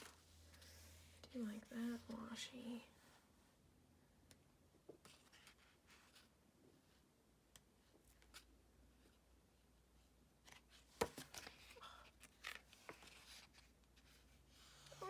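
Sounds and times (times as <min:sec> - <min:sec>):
crackly paper rustling: 0:10.4 - 0:15.0.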